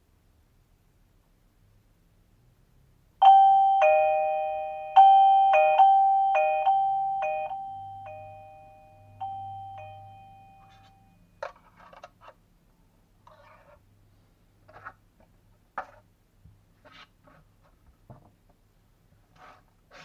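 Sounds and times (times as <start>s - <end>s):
electronic doorbell chime melody: 3.2s - 11.3s.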